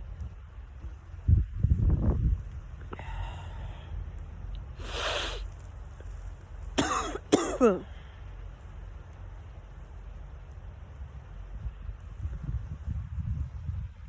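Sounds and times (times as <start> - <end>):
woman breathing in sharply: 3.0 - 4.0, 4.8 - 5.5.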